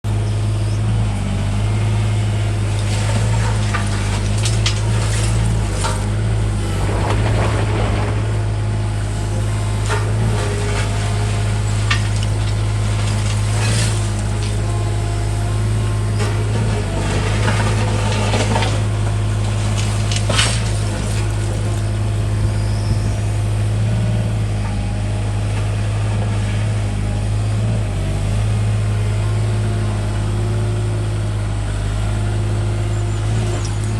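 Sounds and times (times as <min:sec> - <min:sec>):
diesel engine running: 0:00.0 - 0:33.9
metal clanks: 0:02.1 - 0:06.9, 0:09.1 - 0:22.0.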